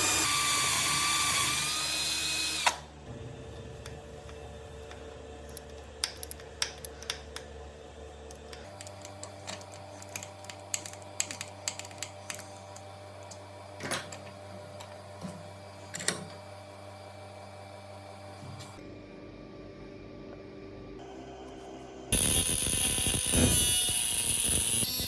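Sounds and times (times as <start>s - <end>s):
small tools clicking and tapping: 4.3s - 7.5s, 8.3s - 14.1s.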